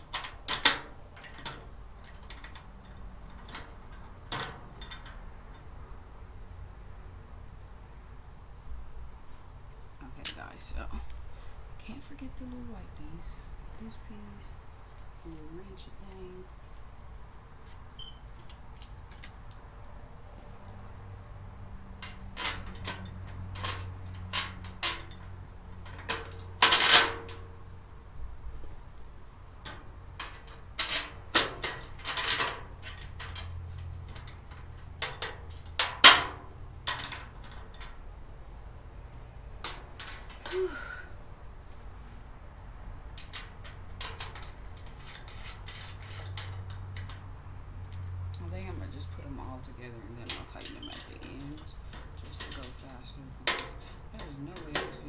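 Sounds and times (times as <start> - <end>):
hardware clicks and clinks: 0.0 - 5.8, 20.3 - 21.0, 22.0 - 27.5, 28.8 - 38.0, 43.1 - 55.0.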